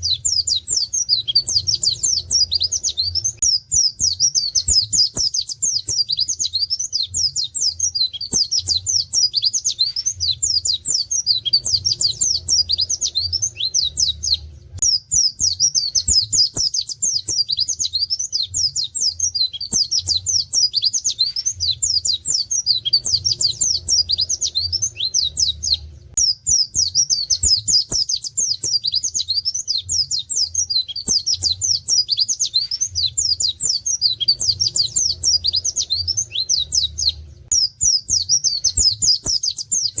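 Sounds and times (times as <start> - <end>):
bird singing high chirps: 0.0 - 40.0
faint low hum: 28.9 - 39.2.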